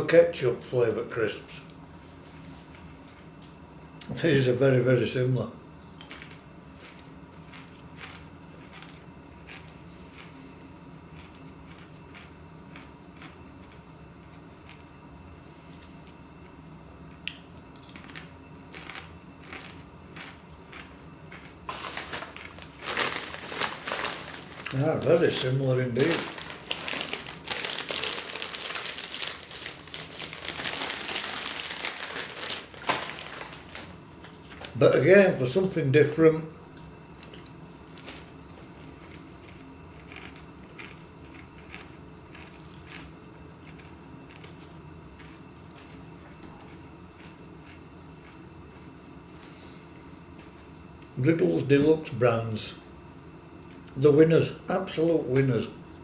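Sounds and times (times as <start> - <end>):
person crunching crisps: 6.0 - 10.4, 11.1 - 13.8, 17.7 - 34.8, 37.3 - 46.0.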